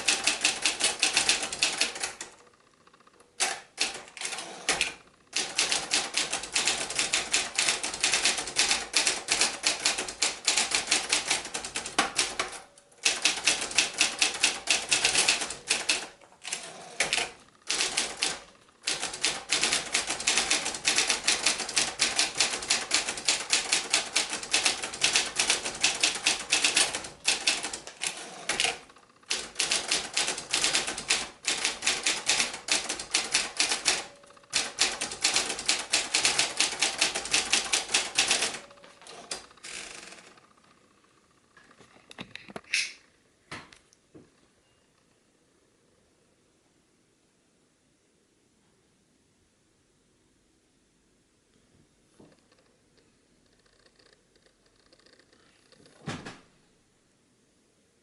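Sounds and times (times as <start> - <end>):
manual typewriter keys clacking: 0.0 - 2.4, 3.4 - 40.3.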